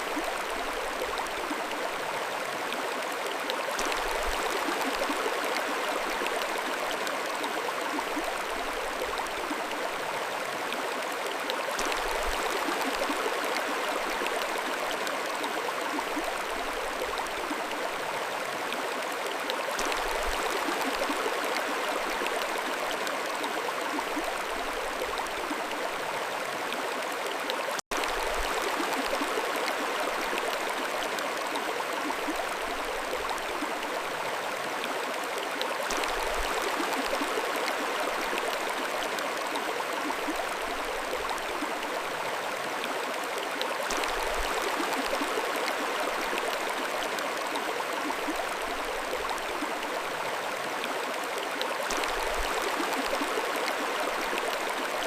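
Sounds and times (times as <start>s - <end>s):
mountain stream flowing: 0.0s - 55.0s.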